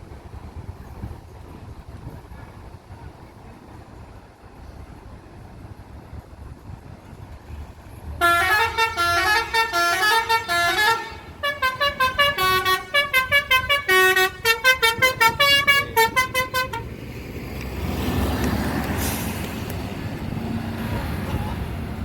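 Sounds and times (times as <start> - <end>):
low vehicle rumble: 0.0 - 22.0
musical air horn melody: 8.2 - 17.0.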